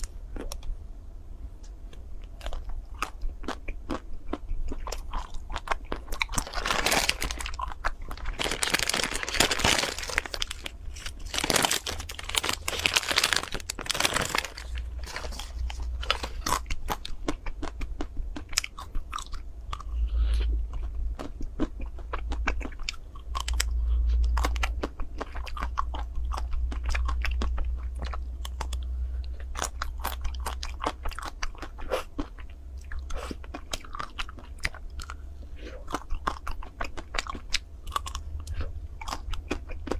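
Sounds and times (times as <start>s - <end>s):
chocolate coating crunching: 2.2s - 35.2s, 35.8s - 39.9s
soft chewing: 13.6s - 39.9s.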